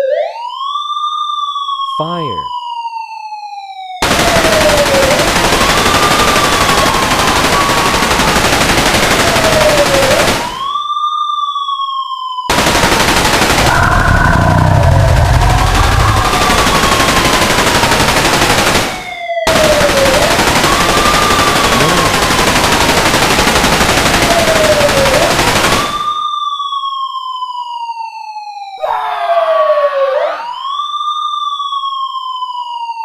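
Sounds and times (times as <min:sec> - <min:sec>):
siren wailing: 0:00.0 - 0:33.0
loud dense rush of noise: 0:12.5 - 0:18.8.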